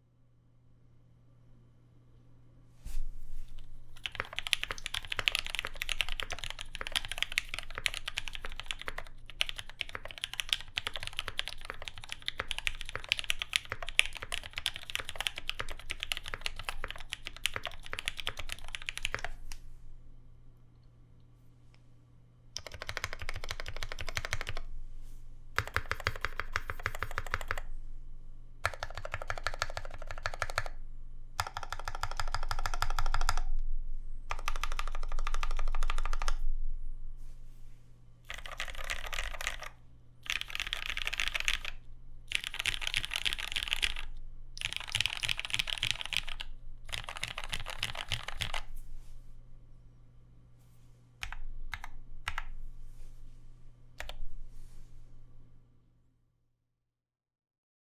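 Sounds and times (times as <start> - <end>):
mechanical keyboard typing: 4.0 - 19.3, 22.6 - 24.6, 25.6 - 27.7, 28.6 - 30.8, 31.4 - 33.5, 34.3 - 36.4, 38.3 - 48.7, 51.2 - 52.5.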